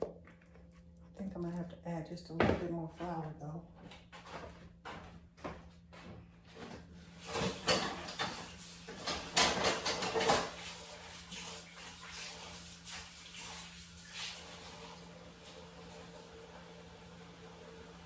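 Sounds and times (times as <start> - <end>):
bowls and containers clattering: 6.6 - 12.3.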